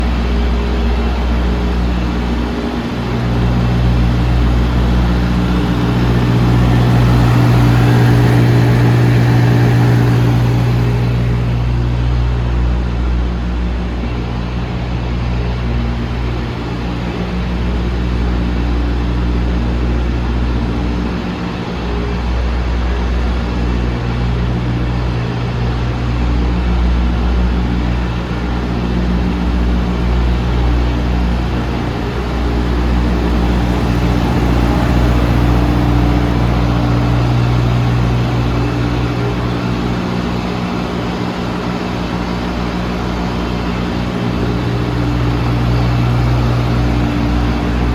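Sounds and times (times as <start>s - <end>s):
diesel truck engine idling: 0.0s - 13.0s, 26.8s - 47.9s.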